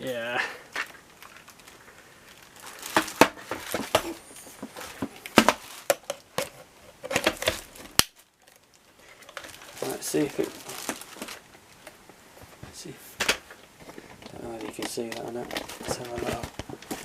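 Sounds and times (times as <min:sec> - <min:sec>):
crinkling: 0:00.4 - 0:17.0
plastic parts clicking and knocking: 0:02.8 - 0:08.1, 0:13.2 - 0:17.0.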